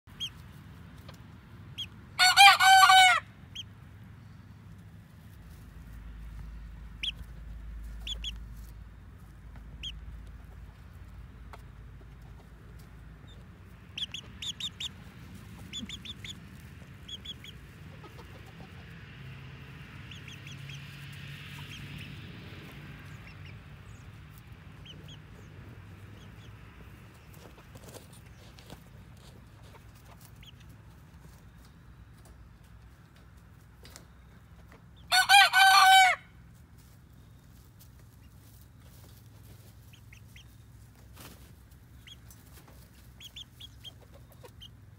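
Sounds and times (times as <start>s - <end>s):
chickens clucking: 0.1s - 44.9s
short high chicken calls: 2.2s - 3.2s, 35.1s - 36.3s.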